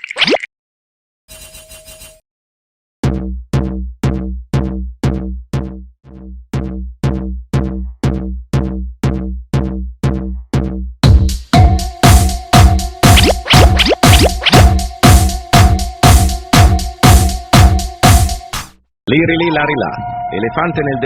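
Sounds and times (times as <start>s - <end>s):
electronic music with bass kicks: 6.6s - 18.8s.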